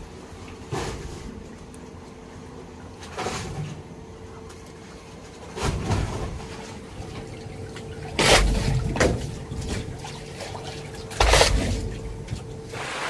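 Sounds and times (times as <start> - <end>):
faint steady hum: 0.0 - 13.0
water splashing: 5.6 - 13.0.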